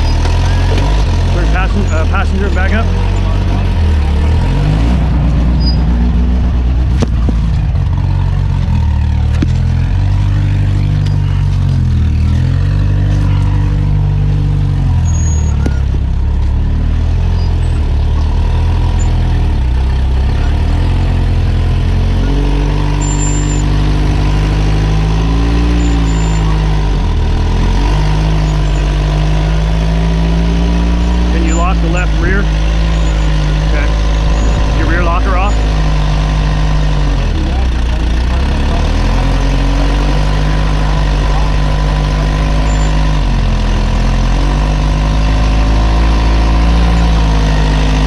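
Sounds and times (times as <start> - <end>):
engine revving under load: 0.0 - 48.0.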